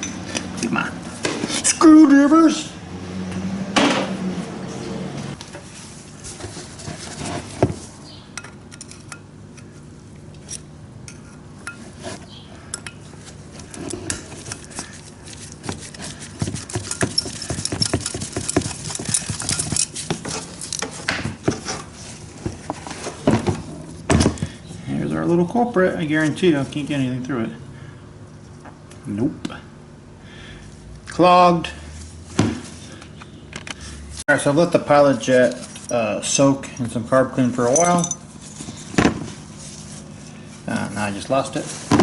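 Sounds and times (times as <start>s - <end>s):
metal tools clinking on metal: 16.6s - 21.0s, 35.3s - 38.8s.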